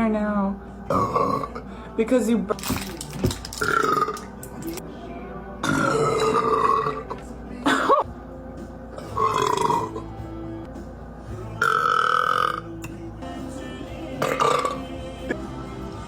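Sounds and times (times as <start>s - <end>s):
girl belching loudly: 0.9s - 1.6s, 5.6s - 8.0s, 9.2s - 10.0s, 11.6s - 12.7s, 14.2s - 14.8s.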